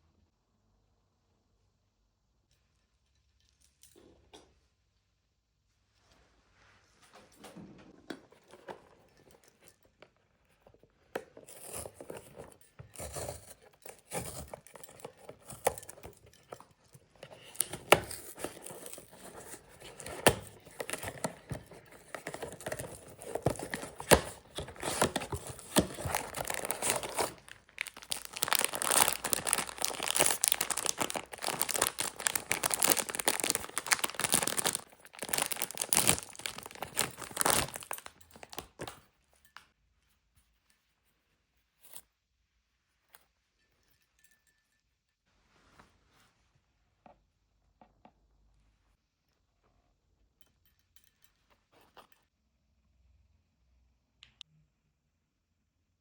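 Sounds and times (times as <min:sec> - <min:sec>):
packaging crinkling and tearing: 0:17.3 - 0:38.9.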